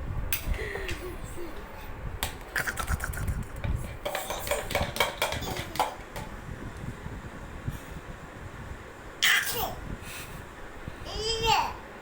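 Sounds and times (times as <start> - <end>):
spoon tapping yogurt container: 3.6 - 6.3.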